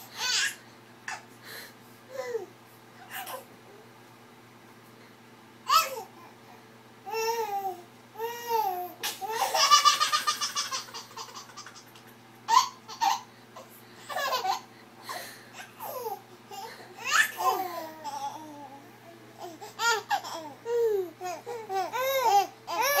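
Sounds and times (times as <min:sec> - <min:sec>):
baby laughing: 0:08.5 - 0:14.7, 0:15.6 - 0:18.8, 0:19.4 - 0:23.0.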